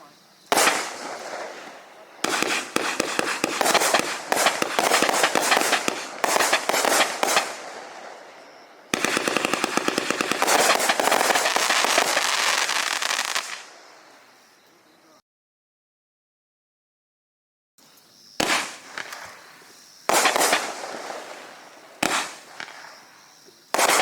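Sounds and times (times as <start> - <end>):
fireworks crackling pops: 0.0 - 8.3, 8.9 - 14.0, 18.4 - 24.0.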